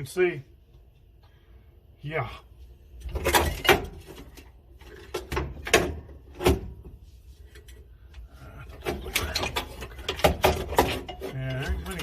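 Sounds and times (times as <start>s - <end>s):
parts knocking and rattling: 3.0s - 12.0s.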